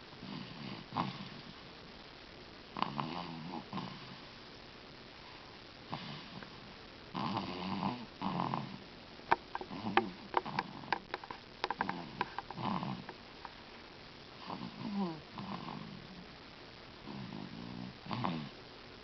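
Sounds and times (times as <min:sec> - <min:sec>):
snoring in rough breaths: 0:05.9 - 0:06.5, 0:09.5 - 0:11.1, 0:11.7 - 0:13.2, 0:17.0 - 0:18.6.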